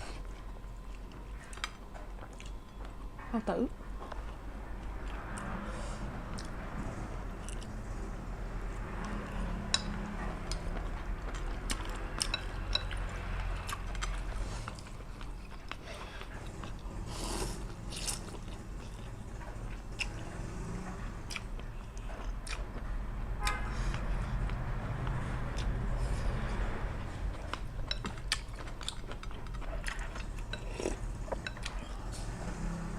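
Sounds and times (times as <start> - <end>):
steady low hum: 0.0 - 32.9
chewing and biting: 7.3 - 8.1, 8.8 - 32.9.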